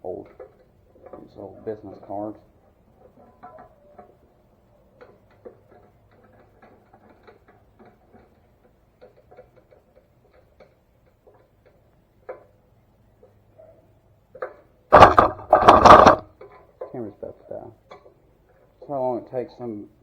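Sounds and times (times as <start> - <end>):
loud harsh noise: 15.0 - 16.2.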